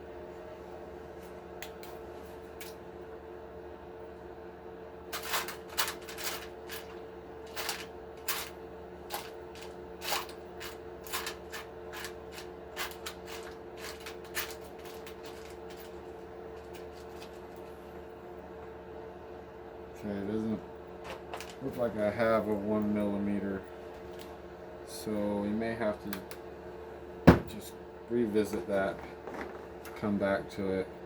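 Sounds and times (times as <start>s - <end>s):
steady hum: 0.0s - 31.0s
small parts clicking and rattling: 5.1s - 17.7s.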